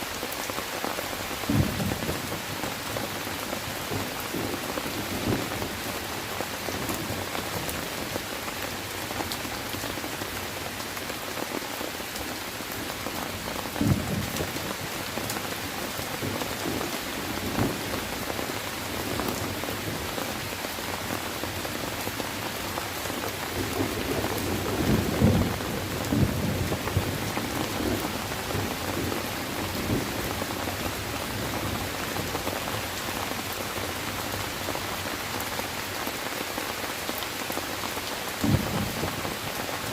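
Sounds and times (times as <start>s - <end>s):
heavy rain on leaves: 0.0s - 39.9s
low rumbles of thunder: 1.5s - 2.5s, 13.8s - 14.8s, 23.5s - 30.5s.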